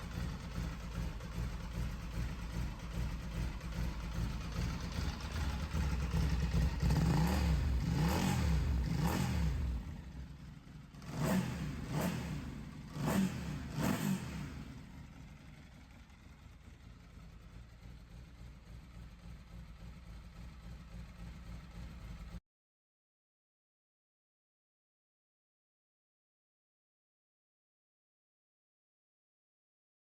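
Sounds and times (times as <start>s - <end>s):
motorcycle engine revving: 0.0s - 17.6s.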